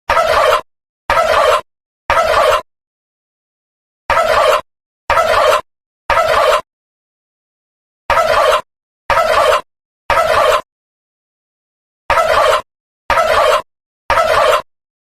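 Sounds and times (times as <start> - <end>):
turkey gobbling: 0.1 - 2.7, 4.1 - 6.6, 8.1 - 10.6, 12.1 - 14.7.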